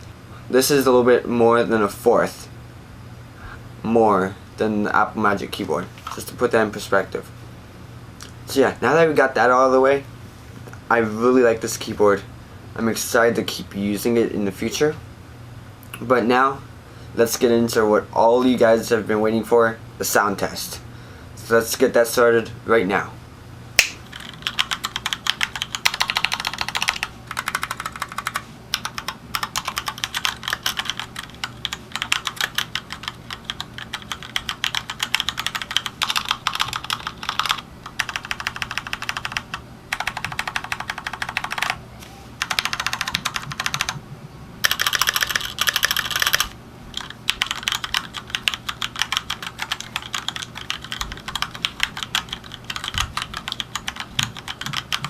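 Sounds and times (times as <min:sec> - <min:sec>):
mechanical keyboard typing: 0:24.1 - 0:41.8, 0:42.4 - 0:44.0, 0:44.6 - 0:55.0.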